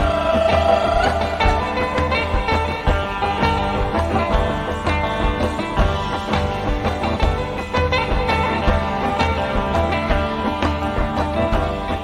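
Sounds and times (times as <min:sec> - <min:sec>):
live ensemble music: 0:00.0 - 0:12.0.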